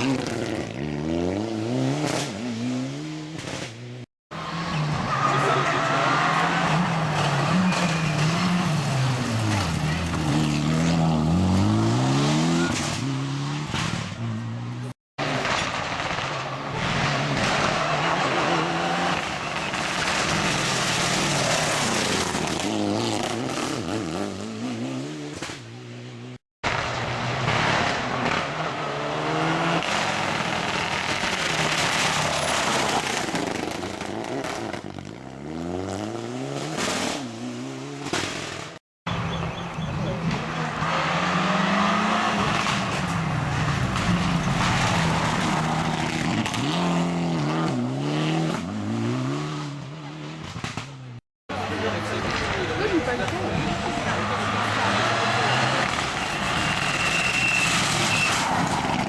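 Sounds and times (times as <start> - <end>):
rally cars revving past: 4.4 - 14.8, 40.2 - 50.8, 51.5 - 59.0.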